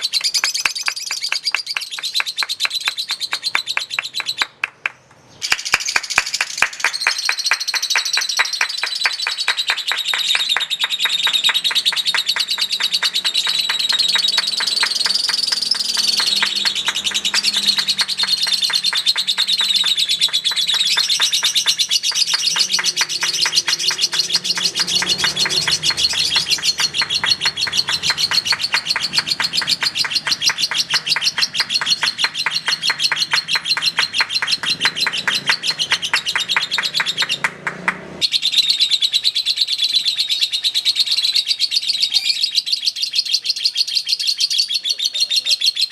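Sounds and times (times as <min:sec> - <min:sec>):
lovebird rapid shrill chattering: 0:05.4 - 0:37.3.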